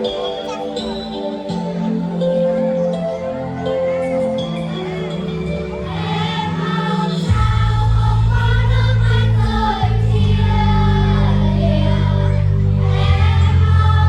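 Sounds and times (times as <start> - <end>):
backing track with strong bass: 4.4 - 14.0
group singing in unison: 5.8 - 14.0.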